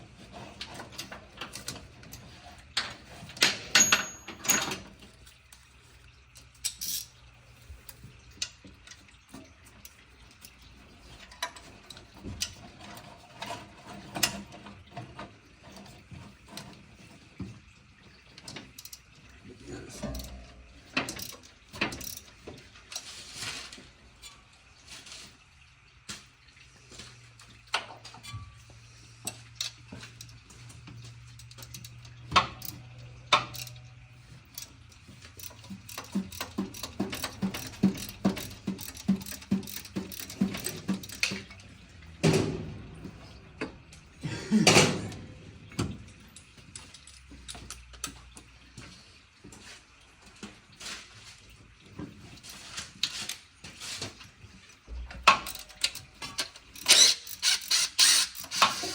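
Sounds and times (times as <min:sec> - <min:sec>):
clatter of hand tools: 0:00.2 - 0:05.1, 0:19.8 - 0:23.8, 0:34.5 - 0:41.8, 0:55.2 - 0:58.9
socket ratchet clicking: 0:56.8 - 0:58.9.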